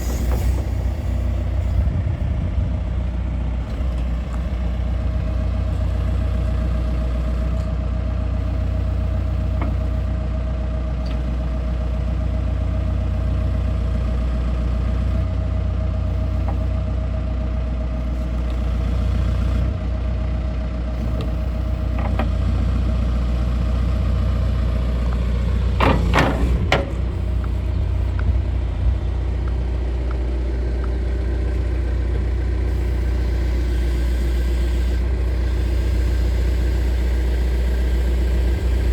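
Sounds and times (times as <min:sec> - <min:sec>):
diesel engine idling: 0:00.0 - 0:38.9
metallic clanks: 0:25.7 - 0:27.6.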